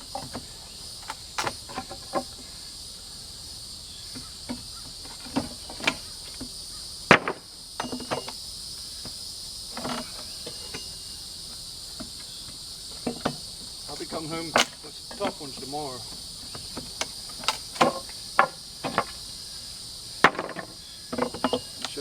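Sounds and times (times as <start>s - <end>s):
wooden boards knocking and cracking: 0.0s - 2.6s, 4.1s - 6.5s, 7.1s - 8.4s, 12.0s - 19.2s, 20.2s - 22.0s
insects chirring: 0.0s - 22.0s.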